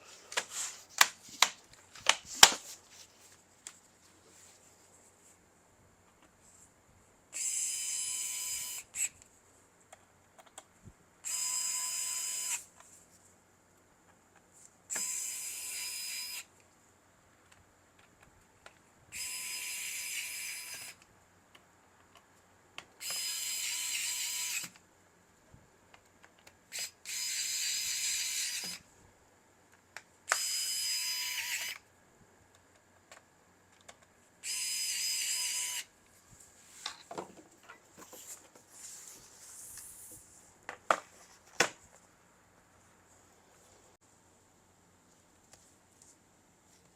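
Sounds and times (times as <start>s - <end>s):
electric screwdriver running: 11.3s - 12.6s, 23.0s - 24.7s, 26.8s - 28.8s, 30.3s - 31.8s, 34.4s - 35.9s.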